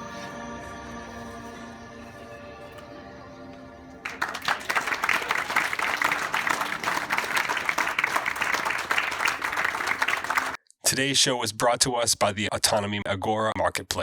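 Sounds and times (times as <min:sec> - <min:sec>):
soft music of sustained notes: 0:00.0 - 0:04.4
crowd applauding: 0:04.0 - 0:10.6.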